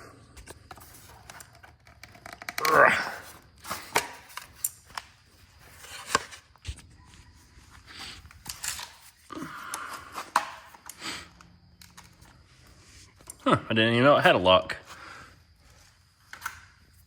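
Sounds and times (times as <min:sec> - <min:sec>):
clicks and knocks of tools: 0:00.4 - 0:02.8, 0:03.6 - 0:05.2, 0:08.2 - 0:12.4, 0:16.3 - 0:16.8
scraping or rustling: 0:00.4 - 0:09.3.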